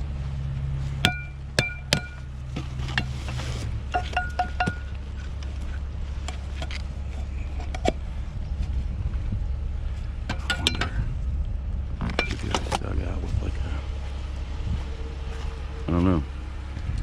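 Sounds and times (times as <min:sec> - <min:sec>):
steady low rumble: 0:00.0 - 0:17.0
hard items clinking and knocking: 0:01.0 - 0:05.4, 0:12.0 - 0:12.8.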